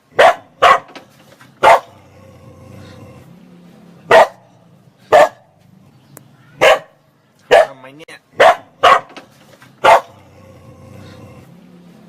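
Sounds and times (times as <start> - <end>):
dog barking: 0.1 - 1.0, 1.6 - 2.0, 4.1 - 4.5, 5.1 - 5.6, 6.6 - 7.8, 8.4 - 9.2, 9.8 - 10.2.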